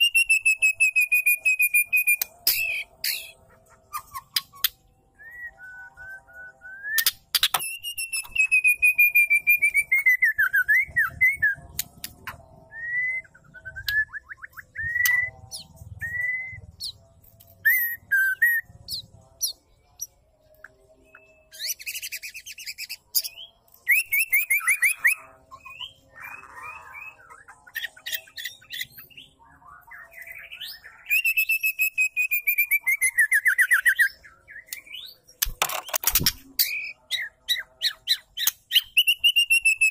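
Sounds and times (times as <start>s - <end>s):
bird calling with whistled notes: 0.0s - 11.6s.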